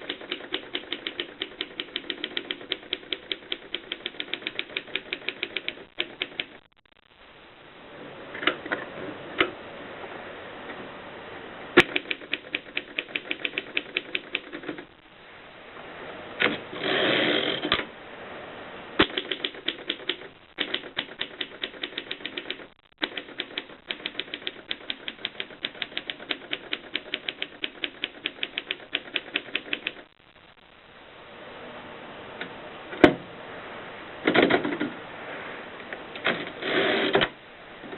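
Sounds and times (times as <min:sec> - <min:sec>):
typewriter keystrokes: 0:00.0 - 0:06.6, 0:11.8 - 0:14.8, 0:19.0 - 0:30.0.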